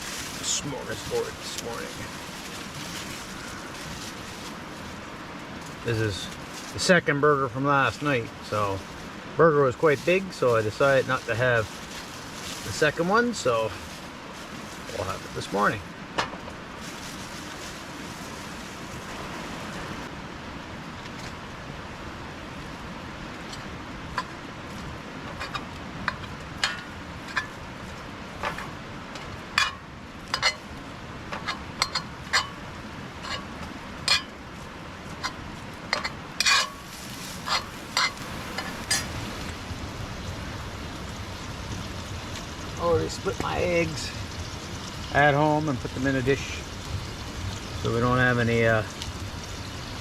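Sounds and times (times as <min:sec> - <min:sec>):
meat sizzling in a pan: 0:09.8 - 0:15.8, 0:36.4 - 0:50.0
utensil scraping a pan: 0:31.4 - 0:32.6, 0:33.2 - 0:34.4, 0:35.1 - 0:39.2.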